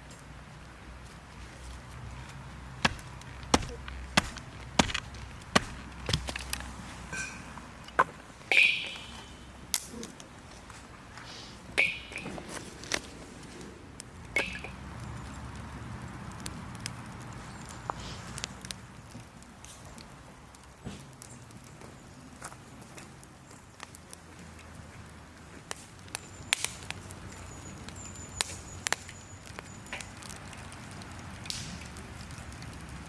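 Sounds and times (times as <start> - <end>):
sharp knocks: 2.8 - 6.4.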